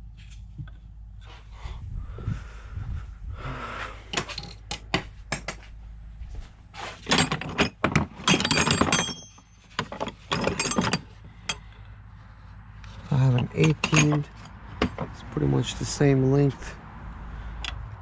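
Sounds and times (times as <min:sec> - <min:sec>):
metal sockets clinking: 0:07.0 - 0:11.7, 0:12.9 - 0:15.2.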